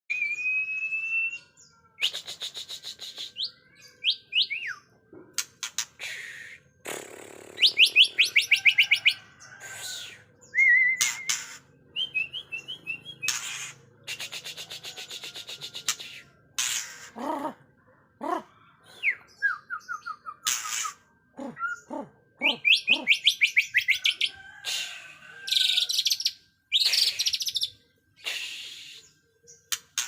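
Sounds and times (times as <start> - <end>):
bird singing varied song: 0.1 - 17.6, 18.2 - 24.6
harsh rasping bird notes: 12.7 - 17.5.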